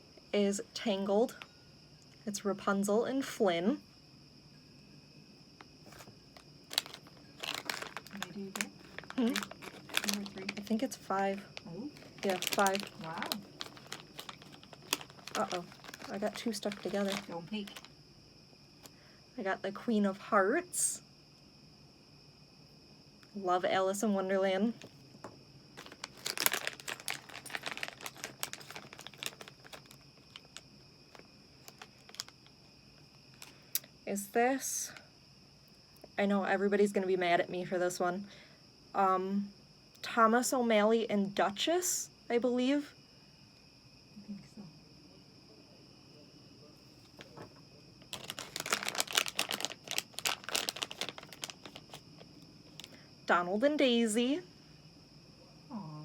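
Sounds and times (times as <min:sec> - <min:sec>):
packaging crinkling: 0:05.8 - 0:18.0, 0:24.8 - 0:25.0, 0:25.8 - 0:33.8, 0:47.0 - 0:53.0.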